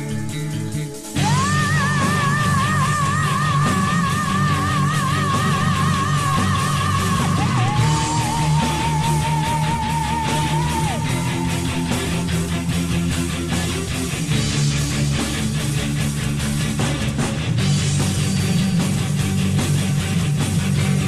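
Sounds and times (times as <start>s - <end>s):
power metal song: 0.0s - 21.0s
high held vocal note with vibrato: 1.2s - 12.2s.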